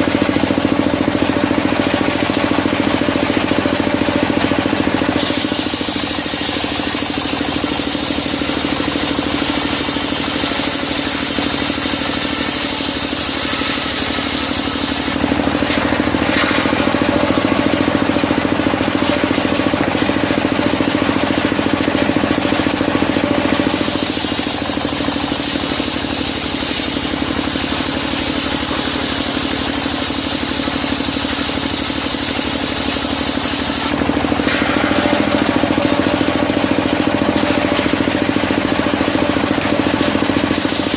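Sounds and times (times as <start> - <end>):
circular saw blade cutting timber: 4.9 - 20.1, 23.2 - 40.9
saw blade spinning free: 5.1 - 18.5, 23.6 - 37.6, 40.2 - 40.9.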